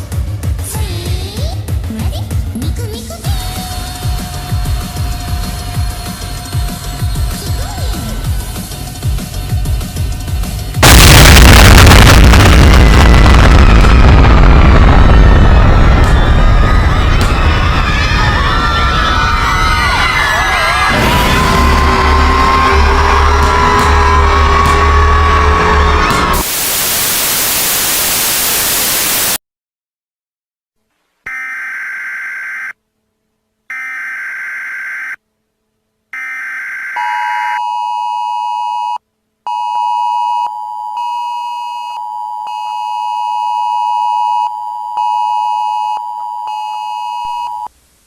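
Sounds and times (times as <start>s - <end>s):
white-noise static burst: 10.8s - 15.1s, 26.2s - 29.4s.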